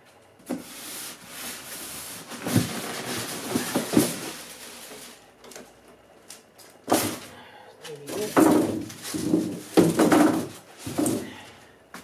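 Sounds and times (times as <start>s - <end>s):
cardboard rustling and scraping: 0.4s - 5.2s, 8.0s - 11.2s.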